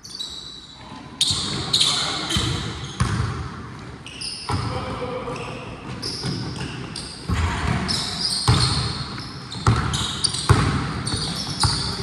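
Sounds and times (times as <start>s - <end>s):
sneakers squeaking: 0.0s - 12.0s
basketball bouncing on court: 2.3s - 3.8s, 4.5s - 4.8s, 6.1s - 12.0s.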